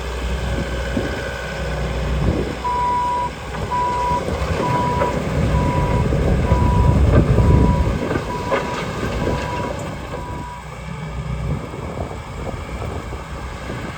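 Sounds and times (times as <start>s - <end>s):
track loader engine and tracks: 0.0s - 13.9s
back-up alarm beeping: 2.6s - 10.6s.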